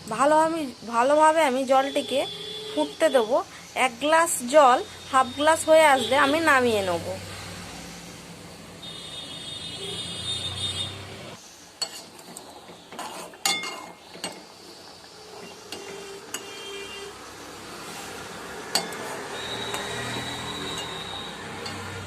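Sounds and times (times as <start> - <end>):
boiling liquid hiss: 11.4 - 22.0
spoon clinking against metal pot: 11.8 - 14.5, 18.7 - 22.0.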